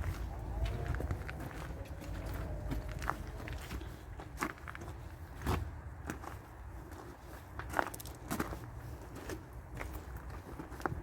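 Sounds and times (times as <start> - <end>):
low rumble: 0.0 - 4.8
footsteps on outdoor path: 0.0 - 11.0.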